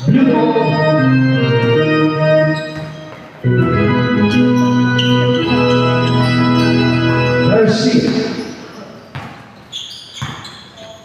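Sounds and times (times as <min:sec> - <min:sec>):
organ-like keyboard chords: 0:00.0 - 0:08.7.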